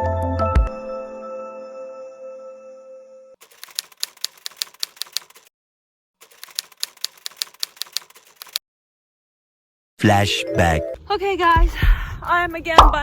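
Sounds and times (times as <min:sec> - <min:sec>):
typewriter key clacks: 0:03.4 - 0:05.5, 0:06.2 - 0:08.6.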